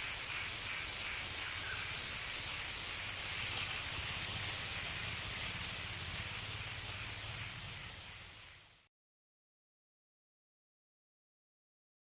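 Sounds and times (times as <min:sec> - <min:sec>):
cicadas buzzing: 0:00.0 - 0:08.9.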